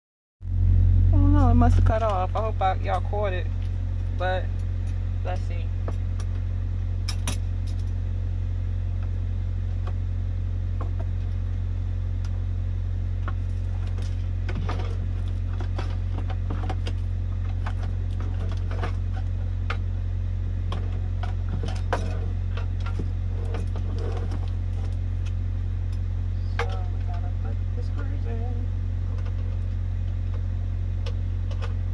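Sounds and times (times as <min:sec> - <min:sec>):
steady low hum: 0:00.4 - 0:31.9
small metallic clicks and rattles: 0:07.1 - 0:08.0.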